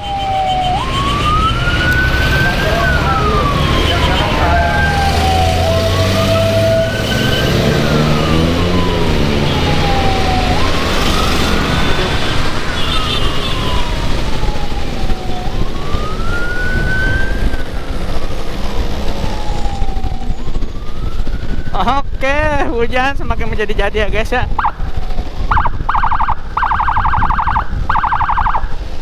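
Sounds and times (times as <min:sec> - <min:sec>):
electronic siren wailing: 0:00.0 - 0:22.8, 0:24.5 - 0:28.8
motorcycle wind and road noise: 0:00.0 - 0:29.0.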